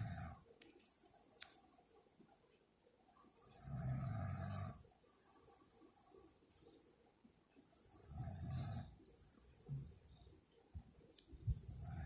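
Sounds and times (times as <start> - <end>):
woman snoring: 0.0 - 0.5, 3.4 - 5.4, 7.9 - 9.0, 11.6 - 12.0.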